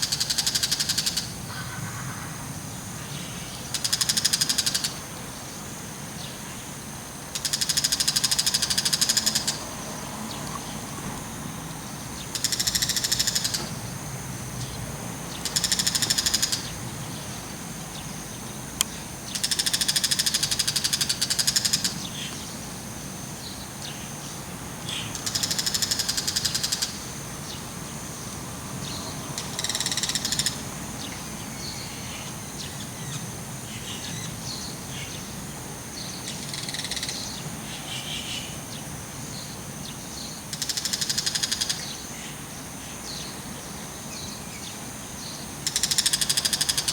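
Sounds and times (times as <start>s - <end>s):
high insect trilling: 0.0s - 46.9s.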